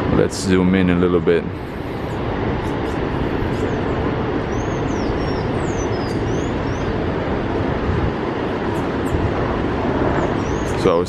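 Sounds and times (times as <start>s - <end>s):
waterfall rushing: 1.4s - 11.0s
high bird chirps: 4.5s - 7.0s, 10.2s - 10.9s.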